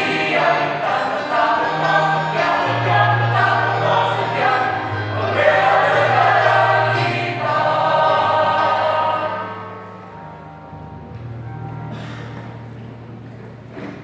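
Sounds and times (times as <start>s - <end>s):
choir singing held chords: 0.0s - 10.3s.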